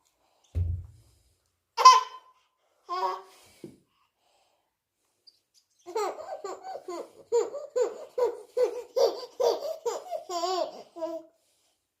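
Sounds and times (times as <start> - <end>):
baby laughing: 1.8 - 2.2, 5.9 - 11.3.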